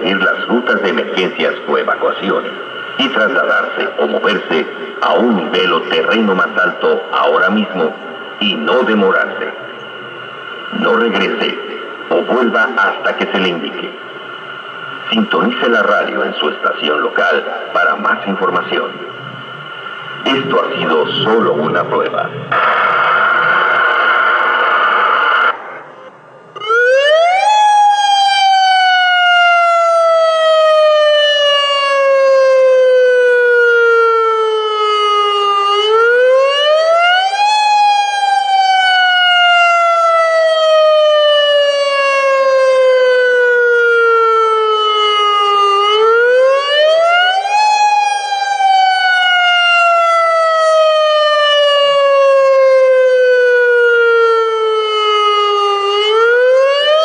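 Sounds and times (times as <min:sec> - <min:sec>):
electronic siren wailing: 0:00.0 - 0:57.0.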